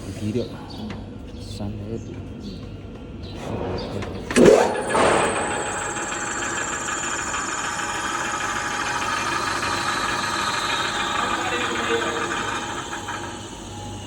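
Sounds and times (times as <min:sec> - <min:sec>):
machine running with high whine: 0:03.4 - 0:14.0
loud burst with falling squeal: 0:04.4 - 0:14.0.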